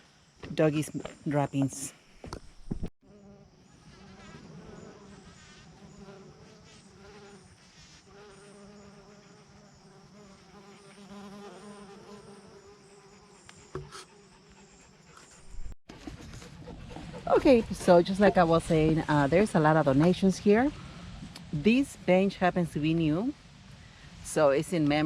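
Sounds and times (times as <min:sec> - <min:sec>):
flying insect buzzing: 0:03.0 - 0:15.4.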